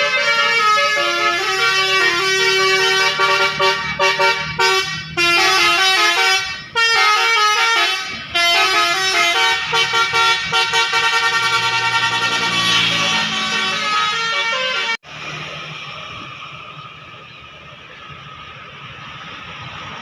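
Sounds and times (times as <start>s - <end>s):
bus air horn playing a tune: 0.0s - 15.0s.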